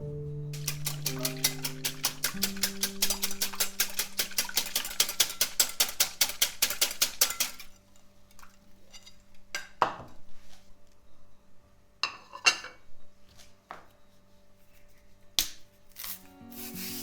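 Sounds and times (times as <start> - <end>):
utensil stirring in a bowl: 0.6 - 7.7.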